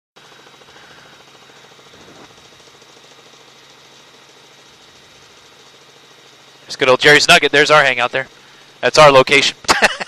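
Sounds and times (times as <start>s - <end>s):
high whine: 0.2s - 2.8s
helicopter rotor and engine: 0.2s - 10.0s.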